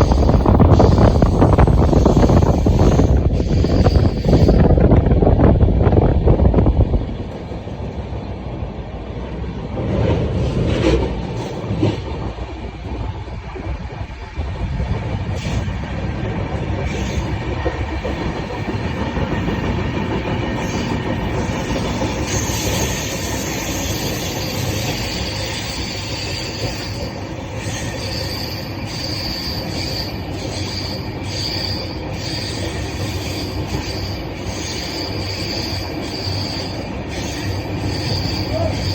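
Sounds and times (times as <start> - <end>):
high wheel squeal: 0.0 - 4.8, 16.9 - 17.5, 20.5 - 38.9
train rumbling on track: 0.0 - 38.9.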